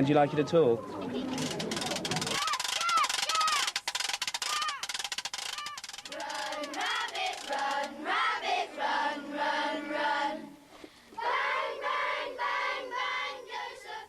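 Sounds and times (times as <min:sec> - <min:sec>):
children singing in unison: 0:06.1 - 0:14.0.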